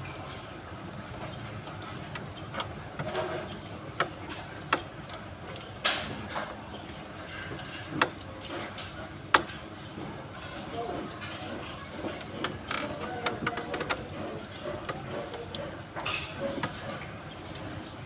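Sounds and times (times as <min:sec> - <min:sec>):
metal tools clinking: 0:16.0 - 0:16.6.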